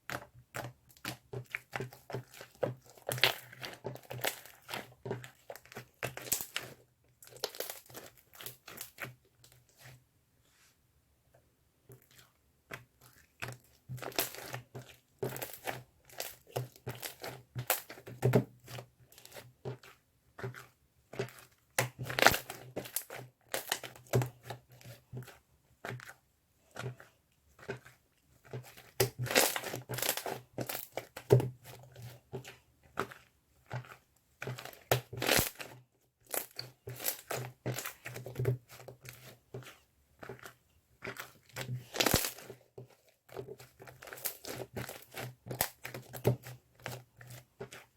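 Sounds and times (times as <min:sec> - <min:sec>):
material crinkling and crumpling: 0:11.9 - 0:47.9.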